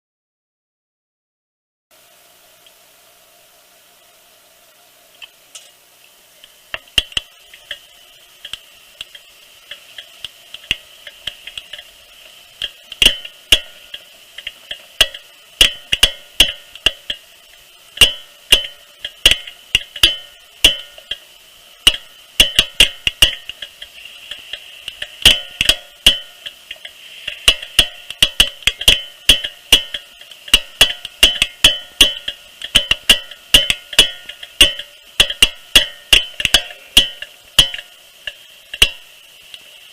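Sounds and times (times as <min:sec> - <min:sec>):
faint steady hum: 0:01.9 - 0:39.9.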